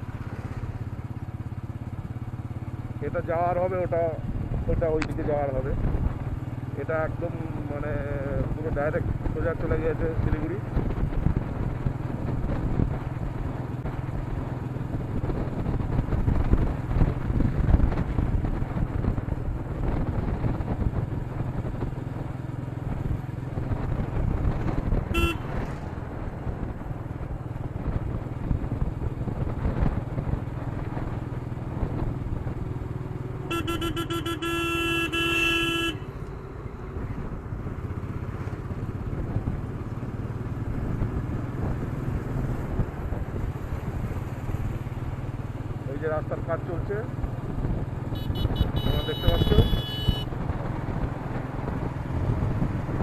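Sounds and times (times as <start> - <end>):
motorcycle engine running: 0.0 - 53.0
wind rumble on microphone: 3.7 - 6.5, 7.3 - 33.5, 36.2 - 53.0
vehicle horn: 25.1 - 25.6, 33.4 - 36.1, 48.1 - 50.3.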